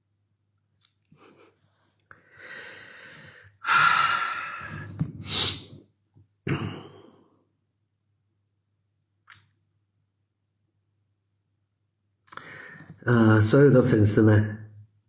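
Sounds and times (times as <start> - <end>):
man breathing close: 1.2 - 5.8, 12.3 - 13.0
man sniffing: 1.2 - 5.8.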